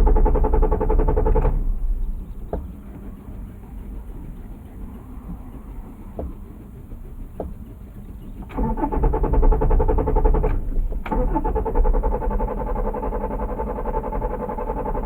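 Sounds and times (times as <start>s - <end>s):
car starter motor cranking: 0.0s - 2.5s, 8.4s - 15.0s.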